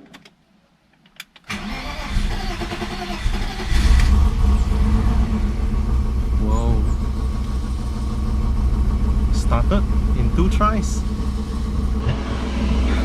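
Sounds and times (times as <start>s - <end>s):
car engine starting and running: 1.5s - 13.0s.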